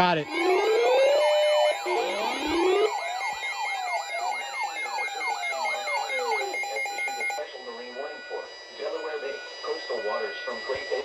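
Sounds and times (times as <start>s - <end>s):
electronic siren-like alert tones: 0.0s - 7.4s.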